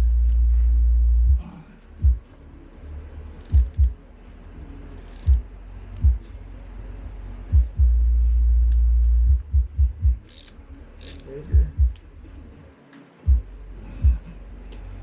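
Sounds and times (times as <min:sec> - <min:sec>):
tool clicking bursts: 0:03.4 - 0:04.0, 0:05.1 - 0:05.4, 0:10.2 - 0:12.0.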